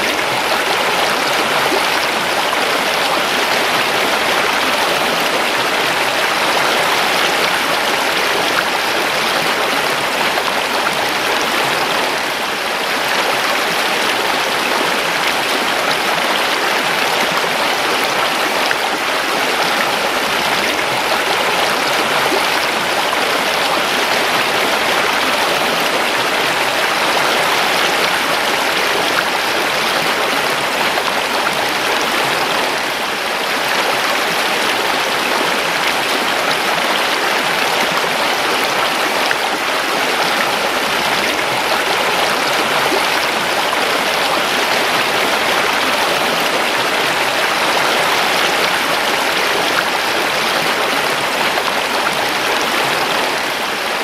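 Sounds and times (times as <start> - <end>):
creek flowing over stones: 0.0 - 54.0.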